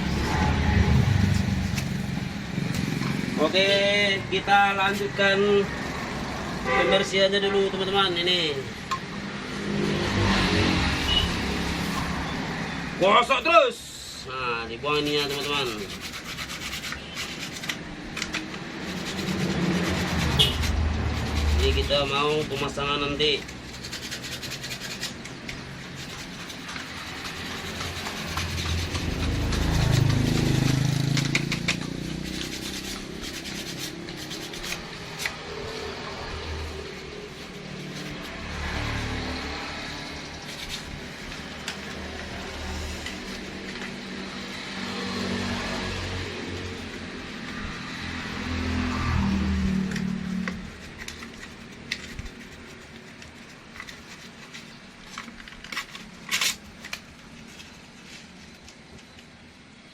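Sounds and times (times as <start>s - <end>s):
rubbing and scraping horn parts: 0.0s - 8.9s, 9.5s - 58.6s
passing vehicle: 0.0s - 52.8s
small horn parts clicking: 25.1s - 33.5s, 49.9s - 57.0s.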